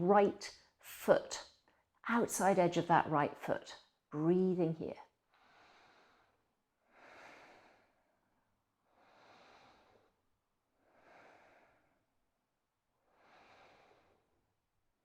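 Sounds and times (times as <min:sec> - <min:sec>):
woman breathing slowly: 0:05.3 - 0:12.3, 0:13.0 - 0:14.4.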